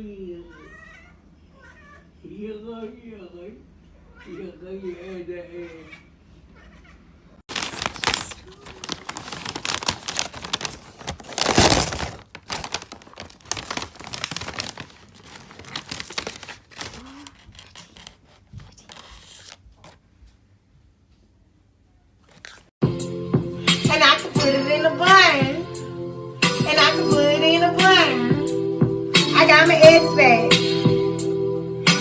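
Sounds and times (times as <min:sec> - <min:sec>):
dense crinkling and crackling: 0:07.5 - 0:19.6.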